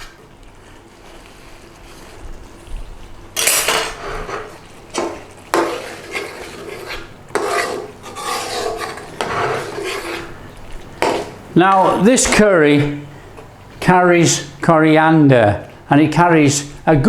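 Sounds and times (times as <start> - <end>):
metal utensils scraping a pan: 3.4 - 10.4.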